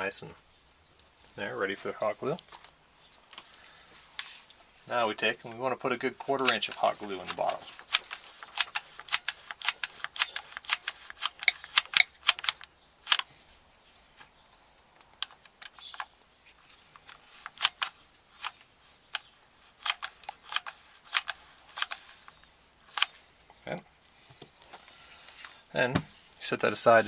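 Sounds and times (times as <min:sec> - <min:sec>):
glue gun trigger clicking: 0:06.5 - 0:13.3.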